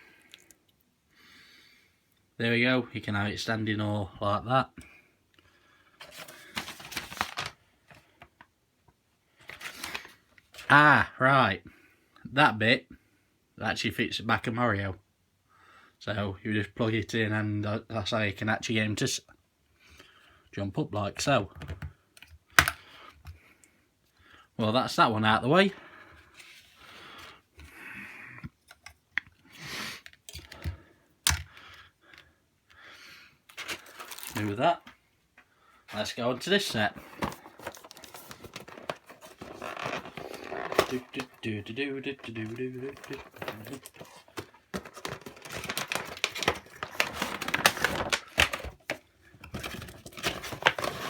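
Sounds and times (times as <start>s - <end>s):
plastic parts rustling: 6.0s - 8.4s, 33.5s - 35.0s, 35.9s - 51.0s
plastic and cardboard crinkling: 6.0s - 8.5s, 9.4s - 10.7s, 33.5s - 35.0s, 35.9s - 51.0s
plastic parts clicking: 21.6s - 23.4s, 30.1s - 31.5s.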